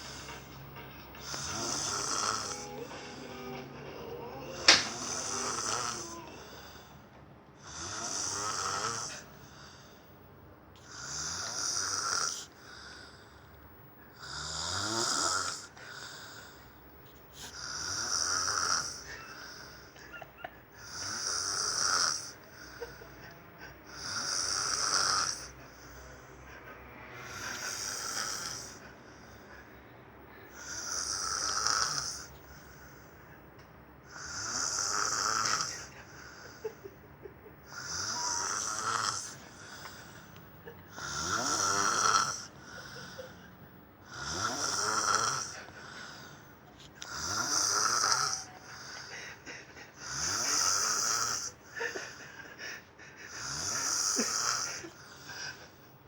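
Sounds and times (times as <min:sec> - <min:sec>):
snoring: 0:01.2 - 0:02.9, 0:04.3 - 0:06.9, 0:07.6 - 0:10.0, 0:10.8 - 0:13.5, 0:14.1 - 0:16.7, 0:17.3 - 0:20.0, 0:20.8 - 0:23.1, 0:23.8 - 0:26.2, 0:27.2 - 0:29.4, 0:30.4 - 0:33.0, 0:34.1 - 0:36.7, 0:37.6 - 0:40.3, 0:40.9 - 0:43.2, 0:44.0 - 0:46.4, 0:47.0 - 0:49.1, 0:49.9 - 0:51.6, 0:53.3 - 0:55.6.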